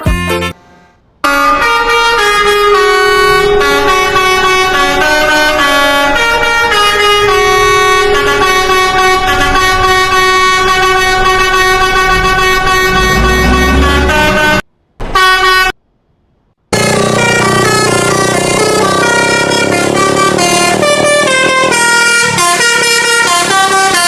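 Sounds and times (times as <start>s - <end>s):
musical air horn tune: 0.0s - 15.8s, 16.8s - 24.0s
low rumble: 11.4s - 14.6s.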